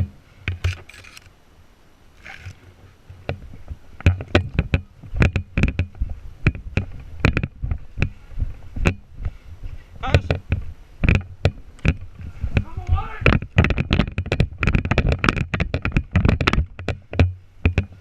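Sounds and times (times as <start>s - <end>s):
sharp knocks and clicks: 4.0s - 8.2s, 8.8s - 9.0s, 10.1s - 18.0s.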